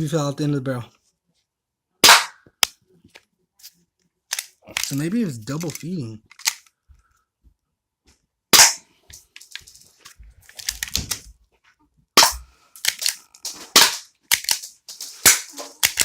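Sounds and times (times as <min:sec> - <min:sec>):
airsoft pistol clicks and snaps: 0:05.6 - 0:06.7, 0:12.2 - 0:13.3, 0:14.3 - 0:14.7.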